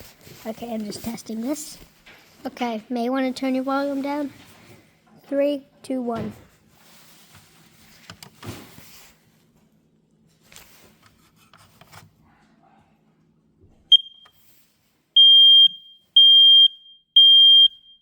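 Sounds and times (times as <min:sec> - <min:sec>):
fire alarm beeping: 0:13.9 - 0:14.4, 0:15.2 - 0:18.0
fire alarm chirp: 0:13.9 - 0:14.4, 0:15.2 - 0:18.0.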